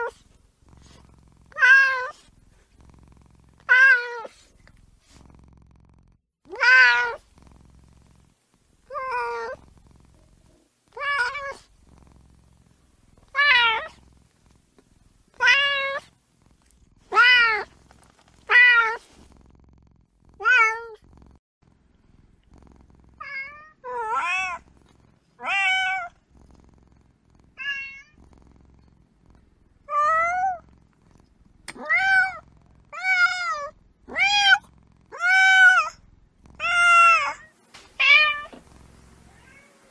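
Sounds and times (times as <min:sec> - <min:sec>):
kitten meowing: 0:39.3 - 0:39.7.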